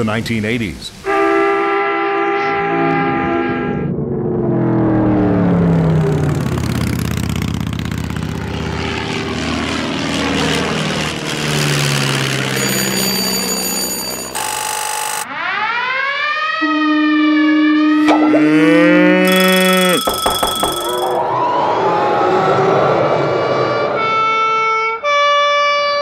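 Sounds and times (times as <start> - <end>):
high steady ringing tone: 12.5 - 15.3, 18.1 - 21.2.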